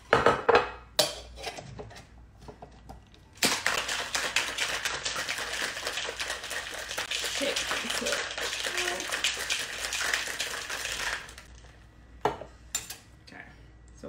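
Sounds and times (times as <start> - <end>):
ice rattling in cocktail shaker: 3.4 - 11.6.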